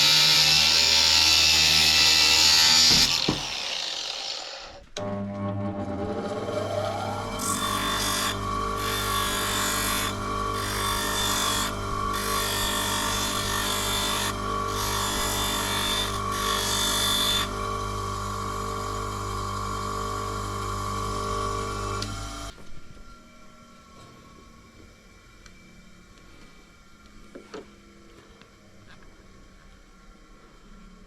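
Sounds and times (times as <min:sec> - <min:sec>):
power tool motor grinding: 0:00.0 - 0:05.2, 0:05.8 - 0:22.6.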